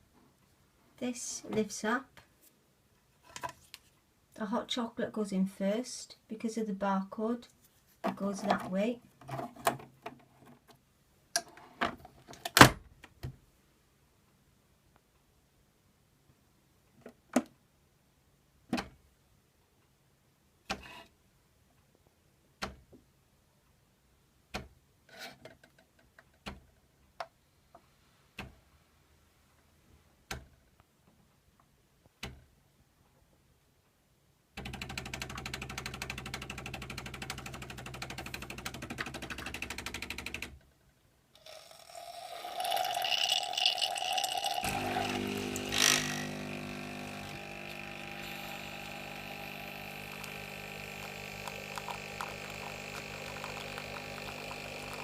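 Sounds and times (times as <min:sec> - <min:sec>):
coffee machine pump buzzing: 0:34.6 - 0:40.4, 0:41.4 - 0:55.0
hiss of drink dispensing: 0:44.7 - 0:55.0.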